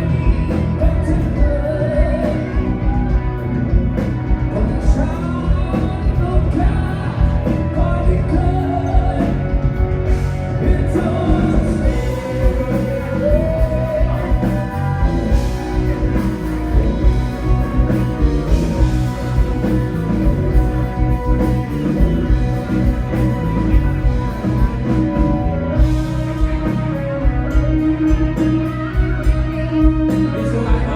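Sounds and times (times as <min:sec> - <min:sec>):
person singing: 0:00.0 - 0:03.5, 0:04.4 - 0:09.9, 0:10.5 - 0:19.4, 0:24.2 - 0:30.9
live rock band playing: 0:00.0 - 0:30.9.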